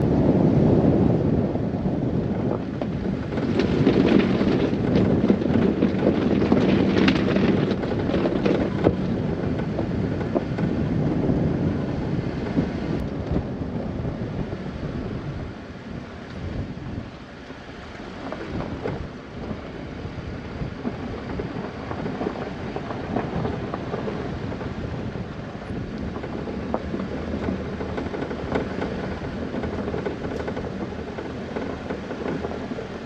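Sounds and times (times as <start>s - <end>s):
wind buffeting microphone: 0.0s - 33.0s
clicks and rustles: 2.6s - 10.7s, 25.5s - 33.0s.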